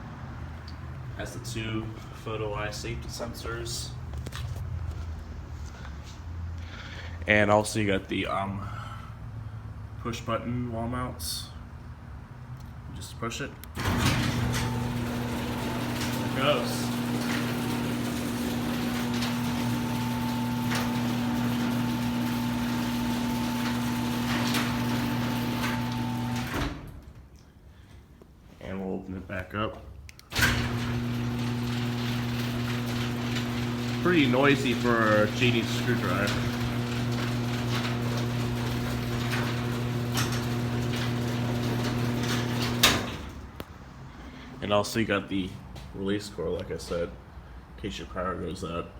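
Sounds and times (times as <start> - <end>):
garage door opener humming: 13.7 - 27.2, 30.3 - 43.6
garage door clunk: 13.8 - 27.3, 30.3 - 43.6.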